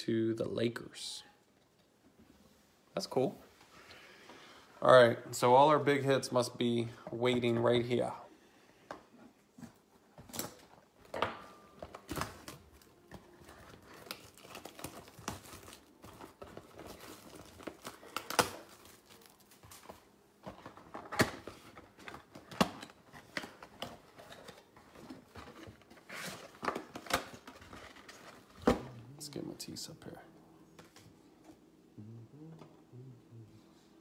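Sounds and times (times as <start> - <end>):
plastic and foil packaging tearing: 11.8 - 20.1.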